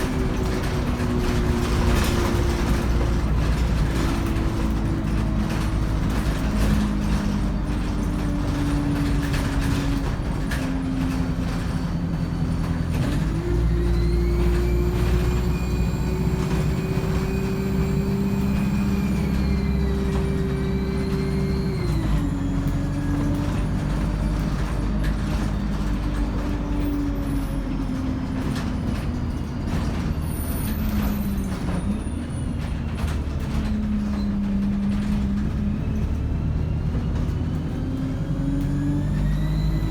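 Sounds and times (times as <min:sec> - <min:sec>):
bus diesel engine droning: 0:00.0 - 0:39.9
high turbo whine: 0:11.5 - 0:30.0.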